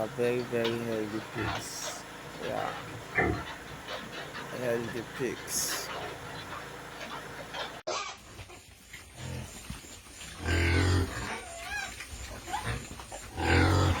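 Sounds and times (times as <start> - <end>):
sow grunting: 0.0 - 8.1, 12.5 - 14.0
piglets squeaking: 0.0 - 8.6.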